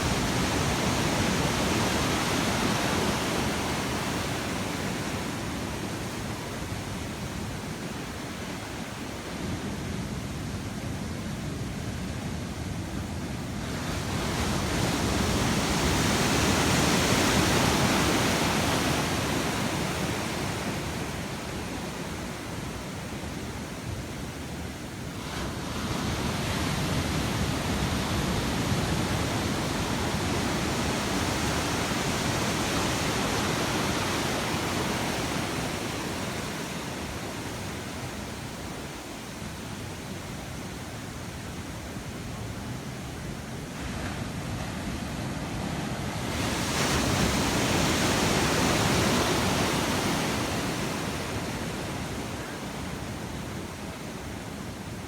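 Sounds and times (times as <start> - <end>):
ocean surf breaking: 25.0 - 39.9, 41.2 - 55.0.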